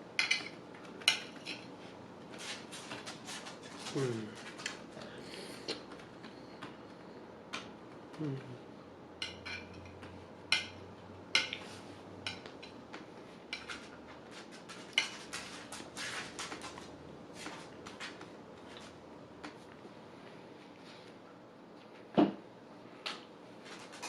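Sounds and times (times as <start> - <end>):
cutlery scraping a plate: 9.2 - 10.8, 13.5 - 16.6.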